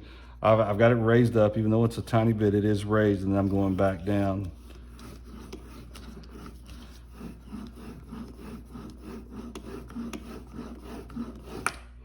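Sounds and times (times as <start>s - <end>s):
blade rubbing on cardboard: 3.2s - 11.8s.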